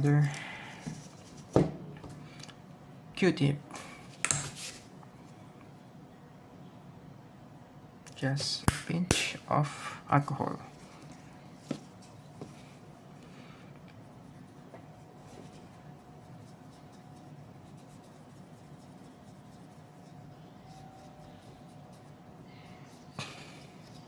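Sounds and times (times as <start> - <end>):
cotton bud scrubbing fan: 10.8 - 24.0.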